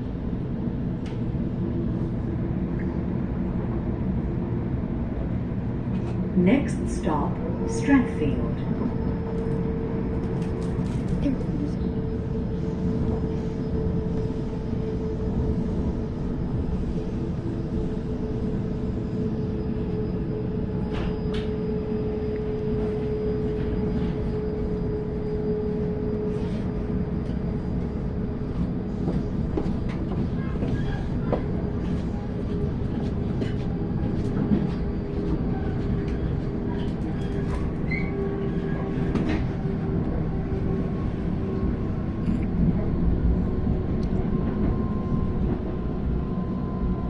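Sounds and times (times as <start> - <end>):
train wheels rumbling on rail: 0.0 - 47.0.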